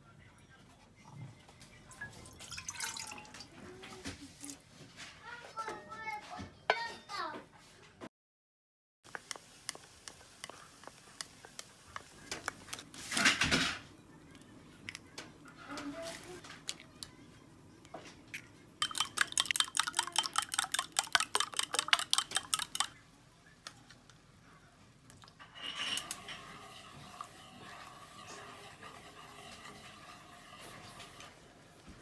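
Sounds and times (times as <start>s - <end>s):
utensil clattering against dish: 12.3s - 14.0s, 17.8s - 23.0s, 25.4s - 31.4s.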